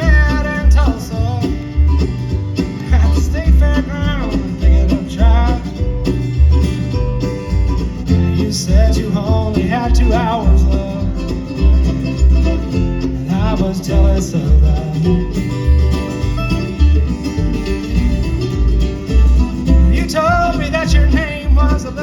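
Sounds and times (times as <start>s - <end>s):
banjo: 0.0s - 22.0s
bluegrass band playing: 0.0s - 22.0s.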